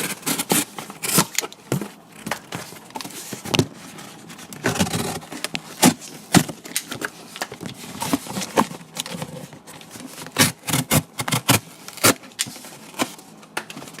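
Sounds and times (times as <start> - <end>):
cardboard being cut: 0.0 - 1.4, 4.6 - 6.5, 10.2 - 12.2.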